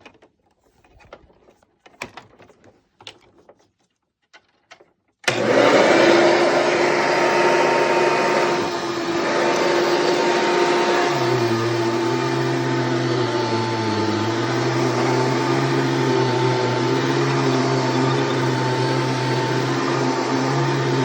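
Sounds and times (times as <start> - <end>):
vacuum cleaner running: 5.2 - 21.0.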